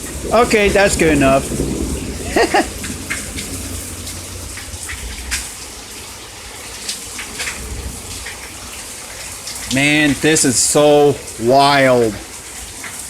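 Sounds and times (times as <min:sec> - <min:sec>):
low rumble: 0:00.0 - 0:05.7
steady rain falling: 0:00.0 - 0:13.0
water gushing and running: 0:00.0 - 0:13.0.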